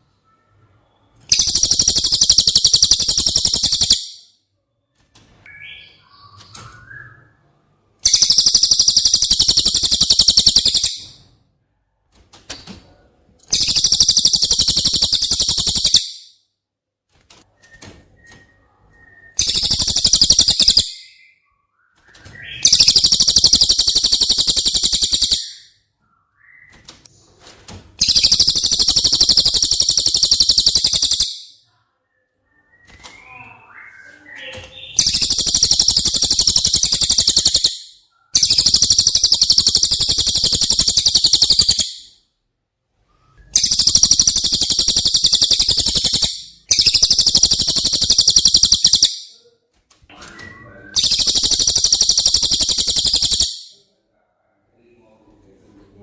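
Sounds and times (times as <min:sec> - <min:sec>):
faint bird chirps: 0:00.0 - 0:11.4, 0:12.8 - 0:16.5, 0:17.5 - 0:27.3, 0:28.0 - 0:42.3, 0:43.0 - 0:49.7, 0:50.3 - 0:54.0
bird high rapid trills: 0:01.3 - 0:04.0, 0:08.1 - 0:11.0, 0:13.6 - 0:16.0, 0:19.4 - 0:20.8, 0:22.7 - 0:25.6, 0:28.0 - 0:31.3, 0:35.0 - 0:37.8, 0:38.4 - 0:41.9, 0:43.6 - 0:49.1, 0:51.0 - 0:53.6.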